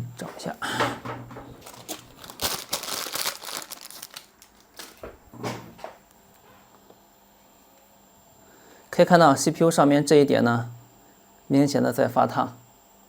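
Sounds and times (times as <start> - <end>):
crinkling and rustling handling: 0.2 - 7.0.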